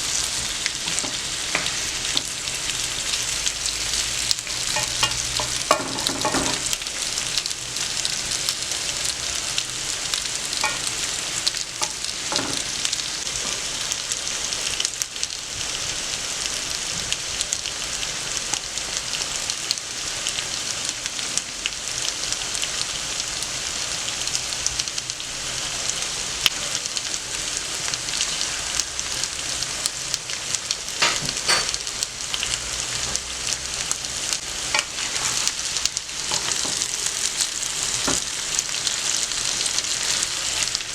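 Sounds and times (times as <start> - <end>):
potatoes sizzling in oil: 0.0 - 40.9
scrapes and knocks in pan: 4.5 - 6.8.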